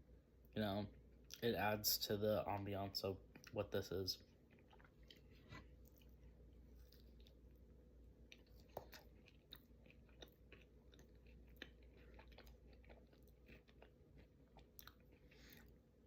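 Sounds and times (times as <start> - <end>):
low steady hum: 0.0 - 16.0
faint chewing: 4.2 - 15.9.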